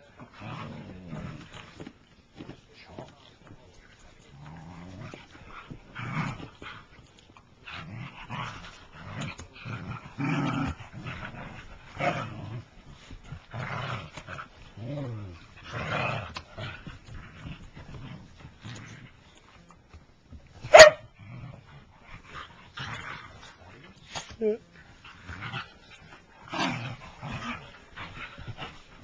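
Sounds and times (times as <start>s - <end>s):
dogs growling and whining: 0.0s - 1.9s, 4.4s - 19.5s, 24.4s - 29.0s.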